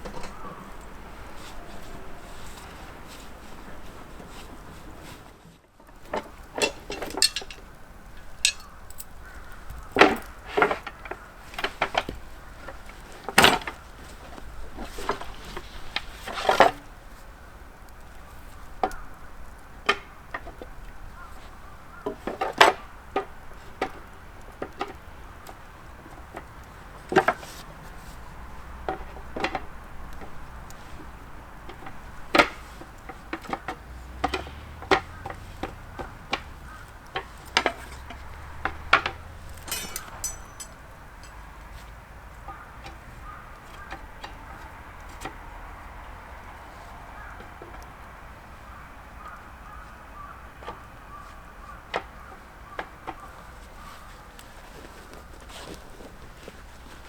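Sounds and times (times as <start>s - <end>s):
dishes clattering: 0.0s - 3.1s, 6.0s - 13.8s, 31.7s - 41.4s
wooden knocks and clacks: 0.0s - 16.8s, 18.8s - 48.2s, 48.8s - 57.0s.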